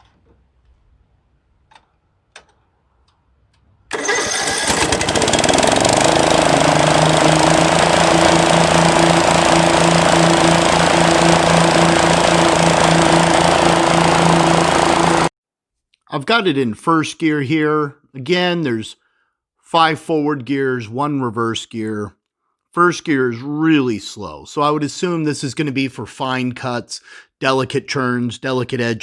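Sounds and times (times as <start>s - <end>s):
lawn mower engine running: 3.9s - 15.3s.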